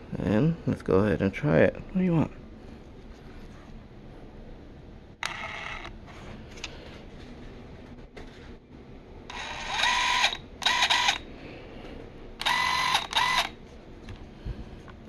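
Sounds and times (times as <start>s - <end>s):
impact wrench motor whining: 9.3s - 11.2s, 12.4s - 13.6s.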